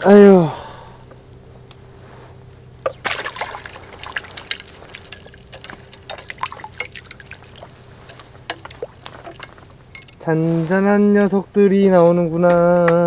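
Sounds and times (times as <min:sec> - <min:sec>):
water splashing and dripping: 0:02.8 - 0:09.7.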